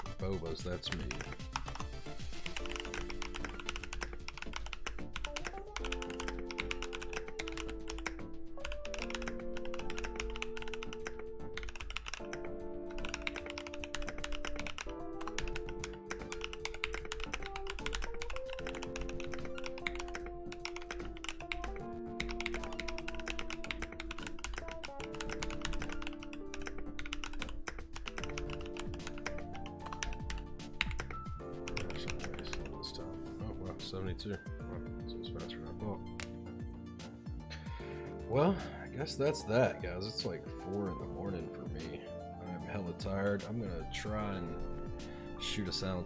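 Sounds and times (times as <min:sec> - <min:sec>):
mechanical keyboard typing: 0:00.0 - 0:33.3
background music: 0:00.0 - 0:46.0.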